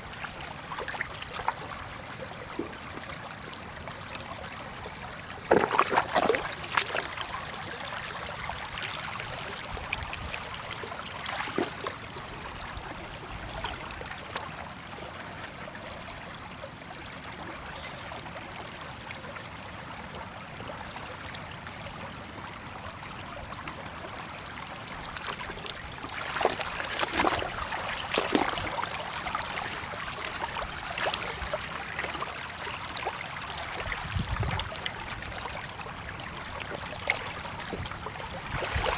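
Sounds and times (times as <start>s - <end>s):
floodwater trickling: 0.0s - 19.4s, 20.4s - 38.9s
water splashing: 5.4s - 7.3s, 10.9s - 12.4s, 25.2s - 33.8s, 36.5s - 38.9s.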